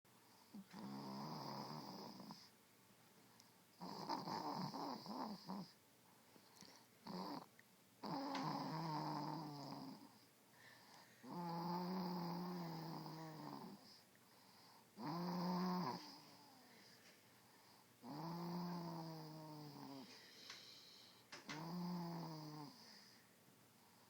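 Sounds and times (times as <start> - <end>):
person snoring: 0.6 - 2.5, 3.8 - 5.7, 8.0 - 10.1, 11.2 - 14.0, 15.0 - 16.5, 18.0 - 20.4, 21.5 - 23.1.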